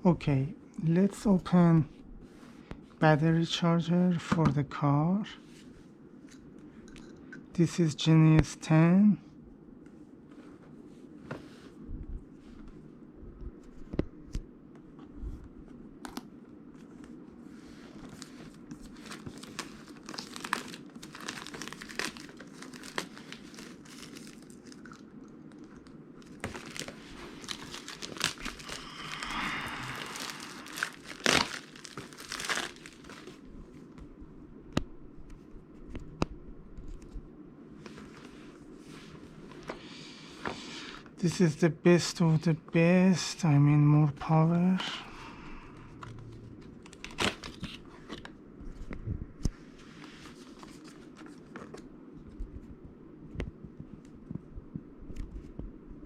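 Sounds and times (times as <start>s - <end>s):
plastic wrap crinkling and tearing: 18.1s - 33.4s, 46.8s - 48.3s
cardboard rustling: 30.0s - 33.4s.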